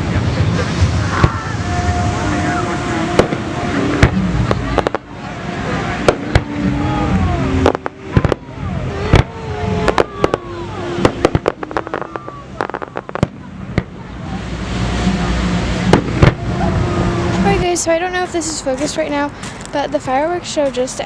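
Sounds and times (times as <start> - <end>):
fireworks bangs: 0.4 - 16.6.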